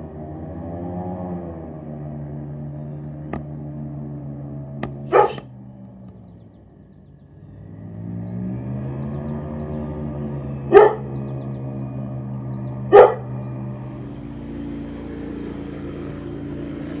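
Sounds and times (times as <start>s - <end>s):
airboat engine and propeller drone: 0.0s - 17.0s
dog barking: 5.0s - 5.5s, 10.7s - 11.2s, 12.9s - 13.4s.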